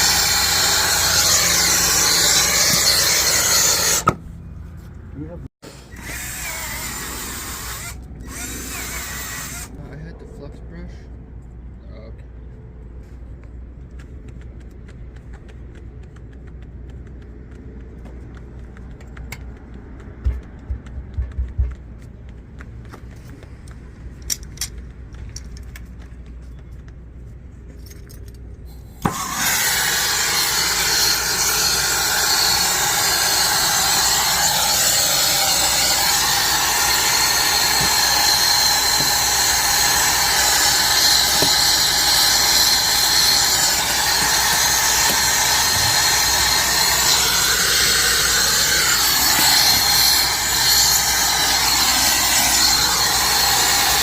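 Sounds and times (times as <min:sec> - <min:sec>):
torch hissing: 0:00.0 - 0:04.1, 0:29.0 - 0:54.0.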